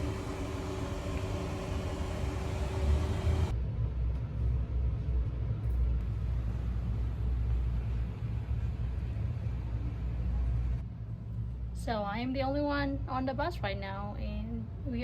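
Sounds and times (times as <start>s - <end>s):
bus engine idling: 0.0s - 3.5s.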